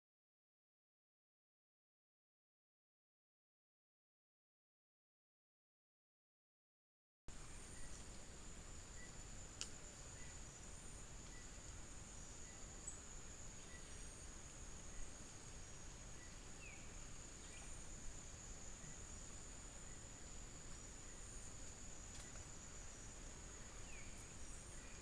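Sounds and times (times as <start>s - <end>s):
faint chirp: 7.3s - 25.0s
insects trilling: 7.3s - 25.0s.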